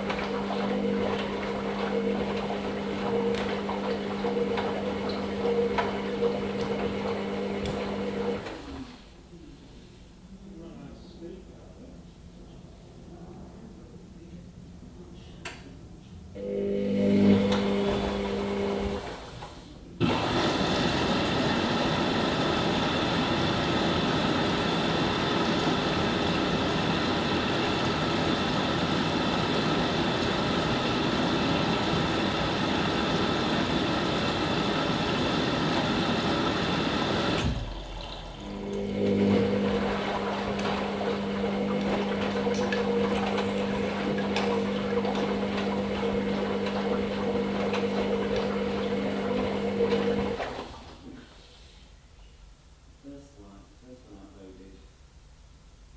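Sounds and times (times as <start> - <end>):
water rushing into washing machine: 0.0 - 9.0, 16.4 - 51.2
washing machine hum: 0.0 - 10.8, 11.5 - 51.5.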